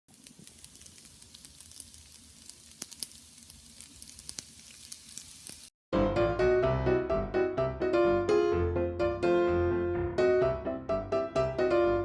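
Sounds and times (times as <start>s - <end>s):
food sizzling in a frying pan: 0.1s - 5.7s
piano music: 5.9s - 12.0s.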